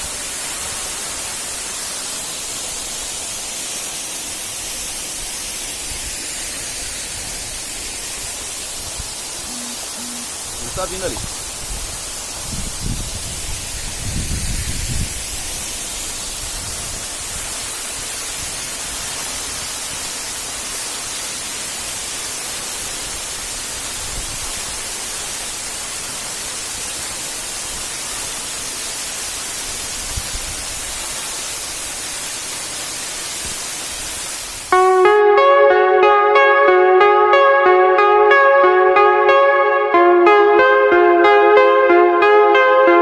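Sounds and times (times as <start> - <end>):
waterfall rushing: 0.0 - 12.5
plucked guitar music: 34.7 - 43.0.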